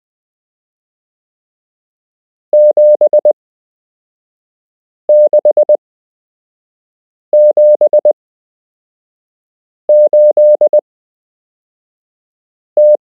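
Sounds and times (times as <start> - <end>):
morse code beeps: 2.6 - 3.4, 5.1 - 5.8, 7.4 - 8.1, 9.9 - 10.8, 12.8 - 13.0.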